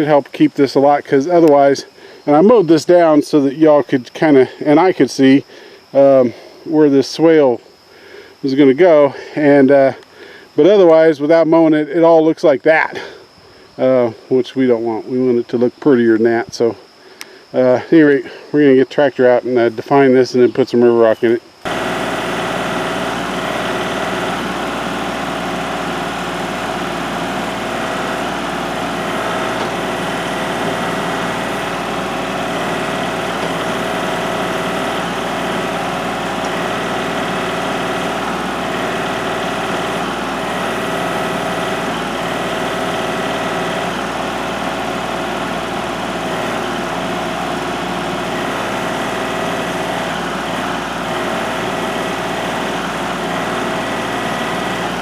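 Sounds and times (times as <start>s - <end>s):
tractor diesel engine running: 21.6s - 55.0s.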